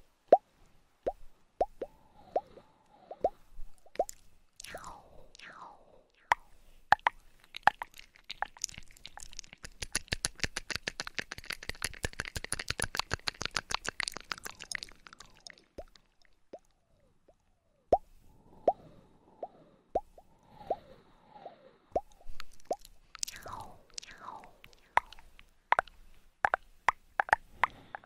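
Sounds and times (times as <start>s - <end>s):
crisp clicks and small pops: 3.1s - 5.5s, 6.3s - 18.0s, 22.0s - 28.0s.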